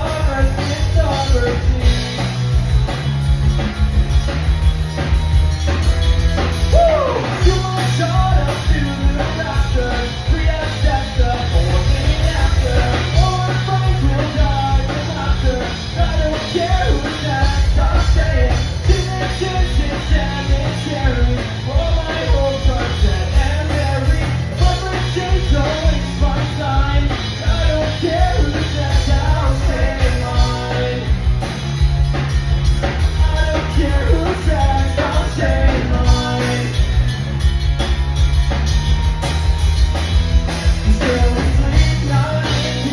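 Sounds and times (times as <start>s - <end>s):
rock band playing: 0.0s - 42.9s
person singing: 6.7s - 31.2s, 33.2s - 36.9s.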